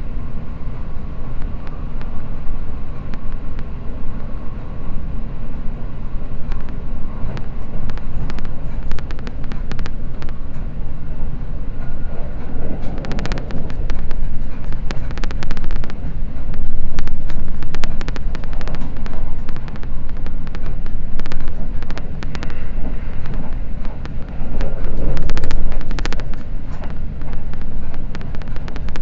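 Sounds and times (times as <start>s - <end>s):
train rumble: 0.0s - 29.0s
train wheels clicking and clattering: 6.3s - 29.0s.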